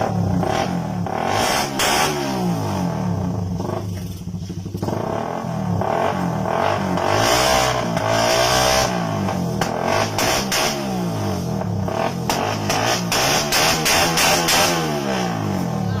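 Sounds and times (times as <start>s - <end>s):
motorcycle engine revving: 0.0s - 16.0s.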